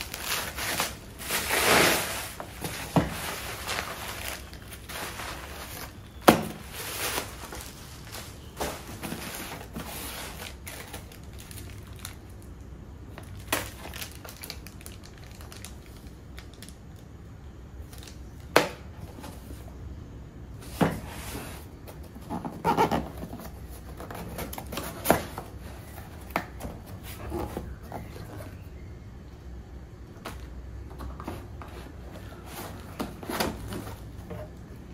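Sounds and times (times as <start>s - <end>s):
packaging crinkling: 0.0s - 17.1s.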